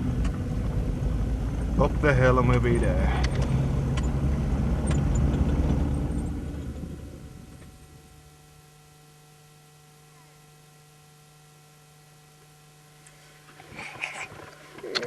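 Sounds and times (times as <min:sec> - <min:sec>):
car running: 0:00.0 - 0:08.2
electrical hum: 0:00.0 - 0:15.0.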